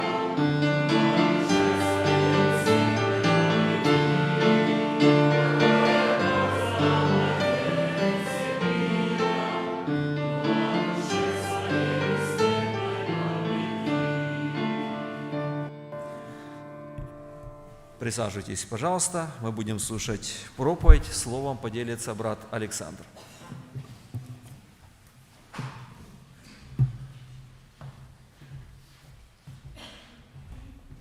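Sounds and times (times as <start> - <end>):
choir singing a hymn: 0.0 - 16.5
instrumental accompaniment: 0.0 - 18.0.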